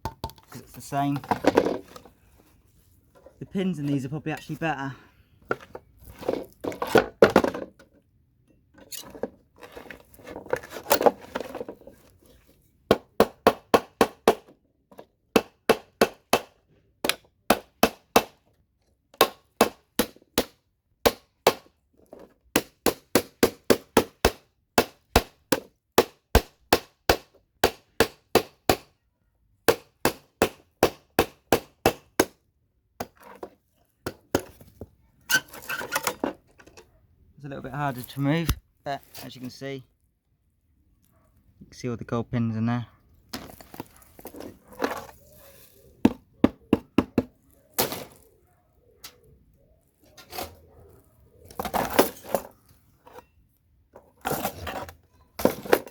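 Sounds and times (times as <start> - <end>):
scraping and handling of board: 0.7 - 4.6, 5.4 - 7.8, 8.8 - 12.7, 43.4 - 46.0, 54.0 - 55.9.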